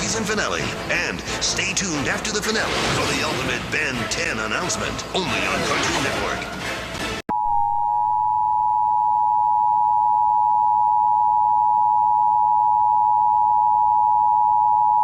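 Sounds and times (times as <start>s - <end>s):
two-tone alert signal: 7.3s - 15.0s.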